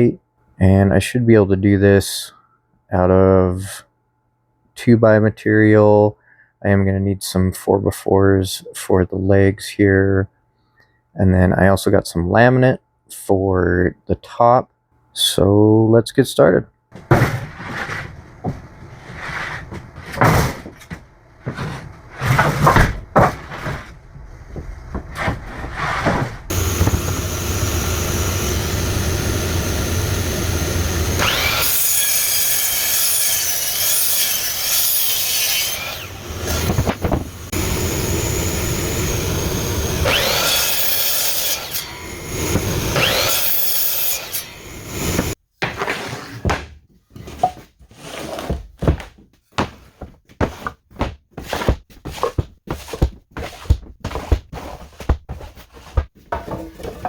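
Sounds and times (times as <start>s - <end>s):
wooden boards knocking and clattering: 19.7s - 23.8s, 36.5s - 37.3s, 45.6s - 47.6s, 55.9s - 57.0s
power tool cutting wood: 26.5s - 45.4s.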